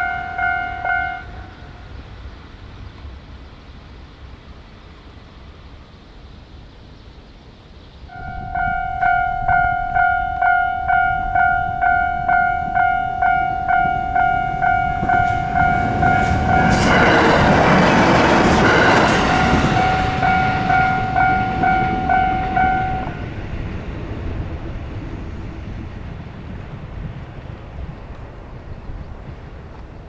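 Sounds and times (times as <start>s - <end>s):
level-crossing alarm ringing: 0.0s - 1.7s, 8.1s - 24.6s
train passing: 0.0s - 6.4s, 7.9s - 30.0s.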